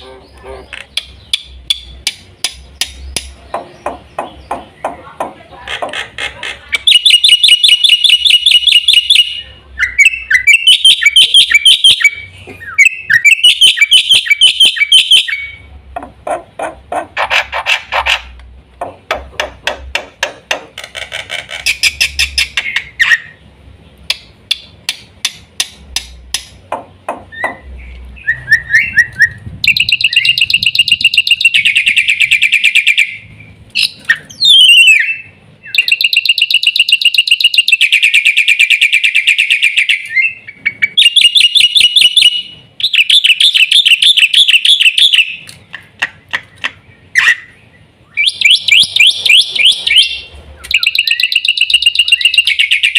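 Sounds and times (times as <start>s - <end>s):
bird clicking chatter: 0.4s - 9.2s, 24.0s - 27.7s, 35.7s - 40.2s, 43.0s - 46.8s, 48.4s - 52.9s.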